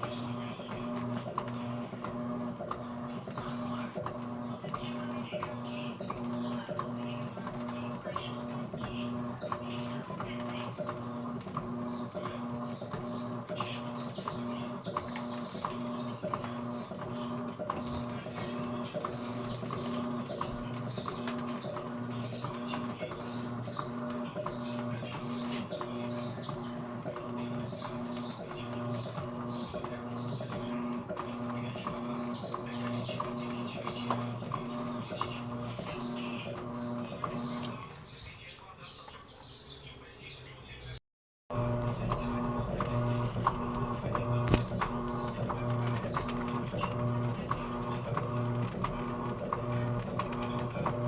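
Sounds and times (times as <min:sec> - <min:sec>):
washing machine running: 0:00.0 - 0:39.9, 0:41.5 - 0:51.0
small birds chirping: 0:00.0 - 0:51.0.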